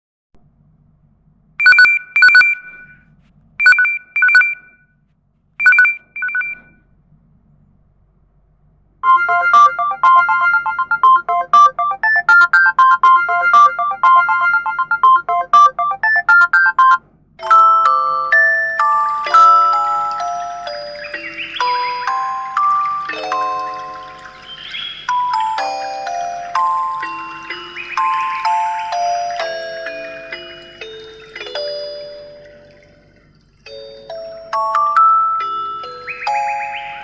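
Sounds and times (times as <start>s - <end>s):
fast melodic ringtone: 1.6s - 3.0s, 3.6s - 4.6s, 5.6s - 6.7s, 9.0s - 37.0s
telephone-style double rings: 5.6s - 6.7s.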